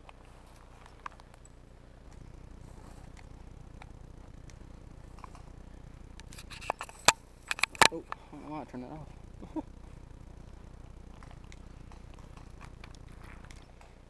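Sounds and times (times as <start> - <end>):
small ticks: 0.0 - 8.3, 9.0 - 14.0
faint low rumble: 0.0 - 14.0
sharp clicks and knocks: 6.1 - 8.2.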